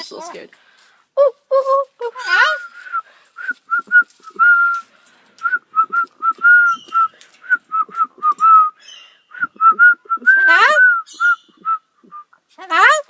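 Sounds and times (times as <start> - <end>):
rising whistled call: 5.4 - 12.3.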